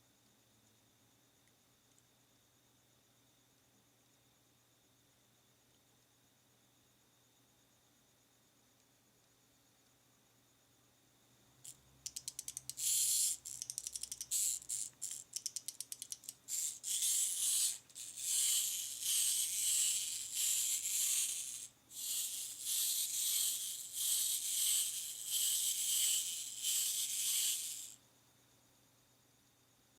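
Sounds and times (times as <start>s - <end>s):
ratchet clicks from winding: 11.6s - 28.0s
clockwork gears whirring: 12.1s - 28.0s.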